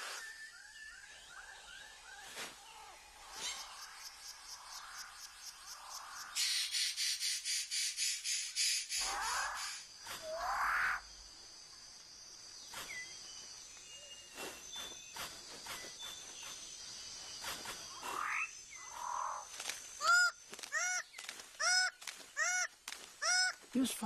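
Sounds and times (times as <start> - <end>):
repeated harsh bird calls: 2.7 - 11.1, 17.3 - 23.7
birds calling: 12.3 - 24.0.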